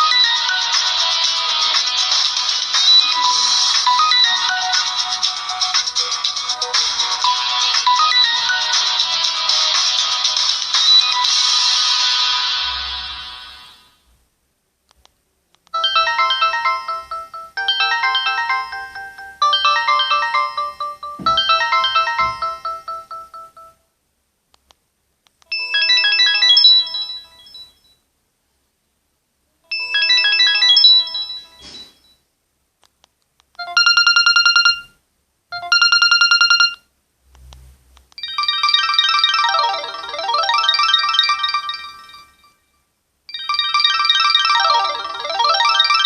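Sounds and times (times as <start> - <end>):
phone ringtone melody: 2.6 - 9.7, 15.8 - 23.8, 25.5 - 27.8, 29.7 - 32.0, 33.6 - 36.9, 38.2 - 42.7, 43.3 - 46.0
fast-trilled ring tone: 29.7 - 32.1, 35.6 - 36.8, 38.2 - 46.0.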